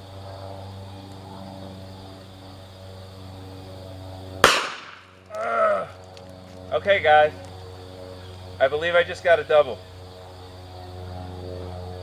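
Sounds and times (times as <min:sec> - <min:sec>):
steady low hum: 0:00.0 - 0:12.0
pistol shot: 0:04.4 - 0:05.2
vocal exclamation: 0:05.3 - 0:06.0.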